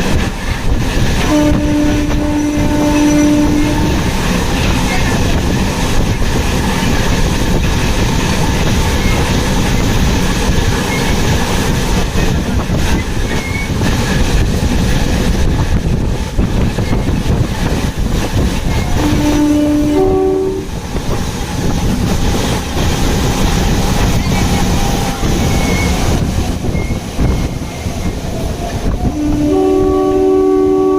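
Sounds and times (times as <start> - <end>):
train rumbling on rails: 0.0 - 30.9
train horn: 1.2 - 4.2, 18.8 - 20.8, 29.0 - 30.9.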